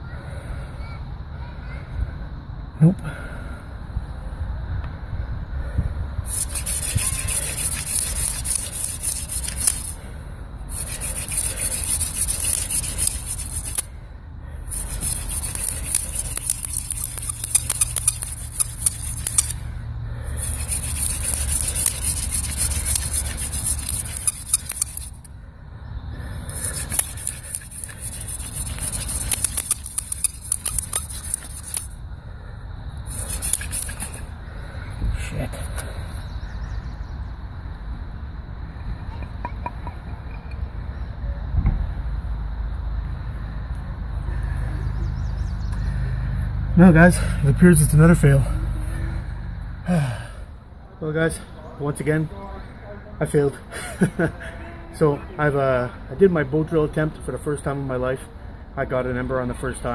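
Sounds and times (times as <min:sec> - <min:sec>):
hand drill spindle scratchy rubbing: 0:06.3 - 0:10.0, 0:10.7 - 0:13.9, 0:14.6 - 0:19.6, 0:20.2 - 0:25.3, 0:26.4 - 0:32.0, 0:33.1 - 0:34.3.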